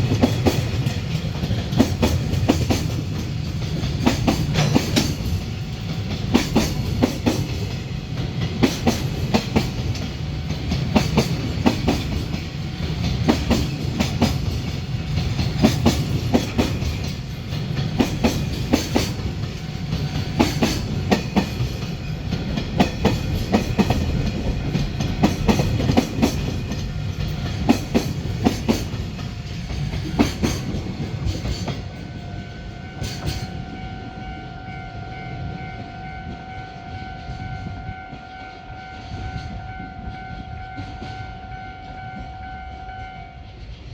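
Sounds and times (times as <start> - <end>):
wheels clacking over rail joints: 0.0 - 32.1
freight train rumbling: 0.0 - 43.9.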